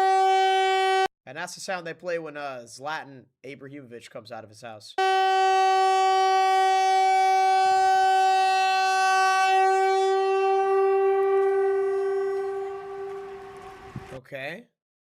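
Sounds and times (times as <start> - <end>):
buzzy alarm tone: 6.2 - 14.0.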